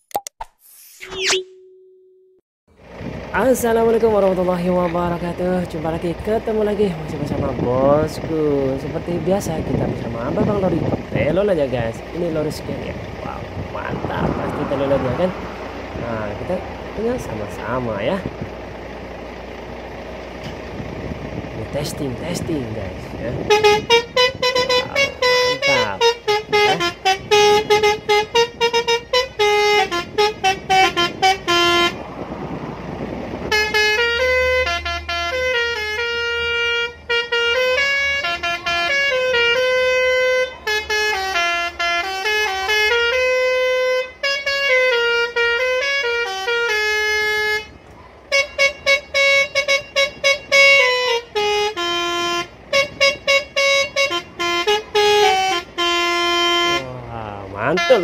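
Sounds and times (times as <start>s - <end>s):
musical multi-tone truck horn: 12.7s - 21.5s, 23.2s - 58.0s.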